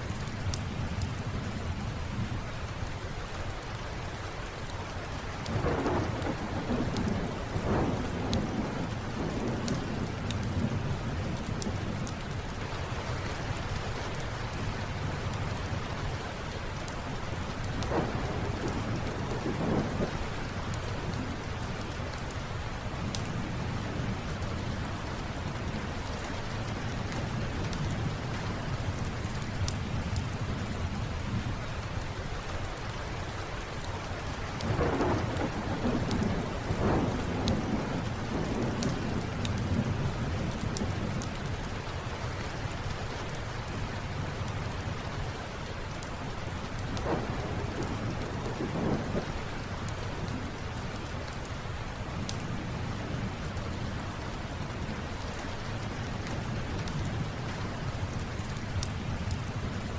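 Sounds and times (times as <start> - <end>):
steady rainfall: 0.0 - 59.9
thunder rumbling: 5.4 - 12.5, 17.2 - 31.6, 34.6 - 41.6, 46.7 - 54.2.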